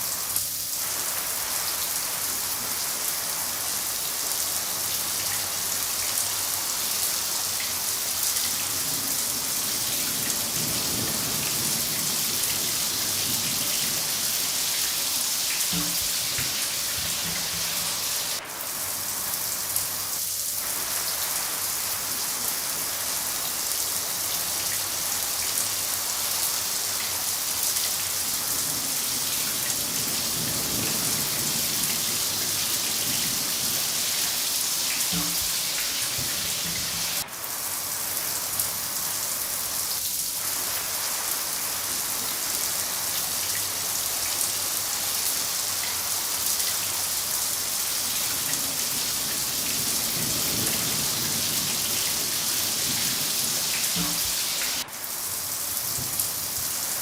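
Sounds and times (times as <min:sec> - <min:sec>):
heavy rain: 0:00.0 - 0:57.0
distant thunder rumbles: 0:09.0 - 0:14.3, 0:28.7 - 0:34.0.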